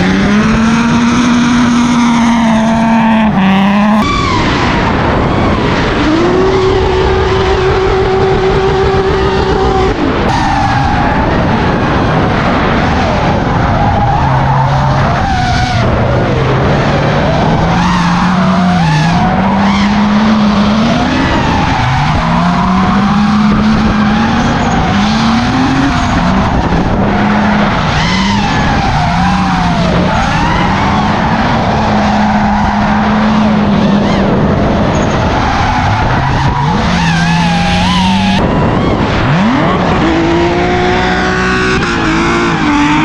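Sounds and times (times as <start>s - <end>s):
car engines revving hard: 0.0s - 43.0s
tyre screech: 16.7s - 40.2s.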